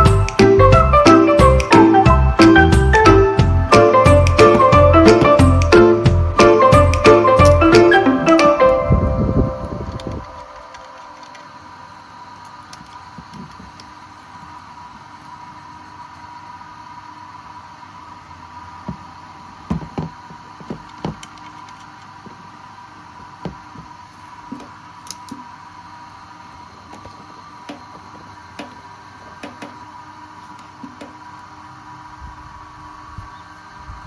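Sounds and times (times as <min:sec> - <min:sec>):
thin high whine: 0:00.0 - 0:12.1
steady hum: 0:00.0 - 0:15.2
knocks and clicks: 0:01.4 - 0:08.8.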